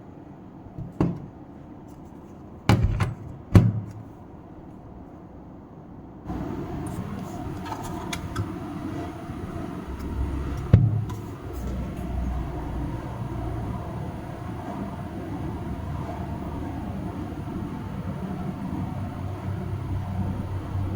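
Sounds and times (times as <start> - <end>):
charger cooling fan hissing: 6.3 - 20.9.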